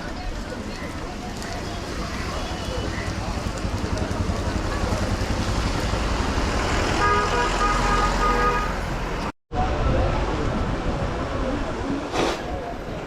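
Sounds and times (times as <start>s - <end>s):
road traffic noise: 0.0s - 13.0s
vehicle horn honking: 7.0s - 8.8s.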